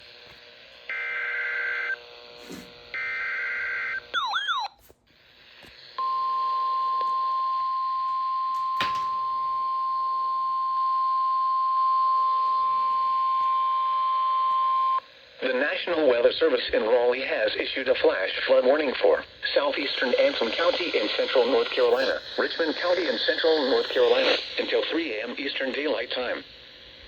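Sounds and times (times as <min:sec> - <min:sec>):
steady warning alarm tone: 0:02.9 - 0:04.8.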